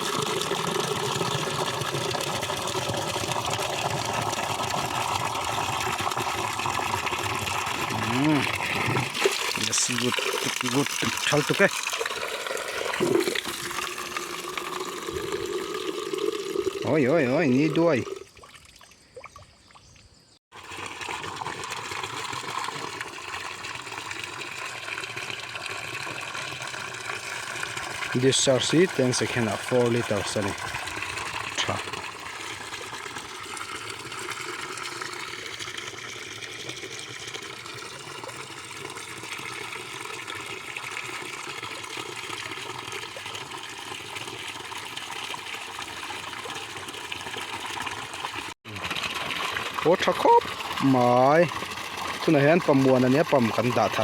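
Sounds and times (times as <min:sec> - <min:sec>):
water gushing from pipe: 0:00.0 - 0:18.8, 0:20.5 - 0:54.0.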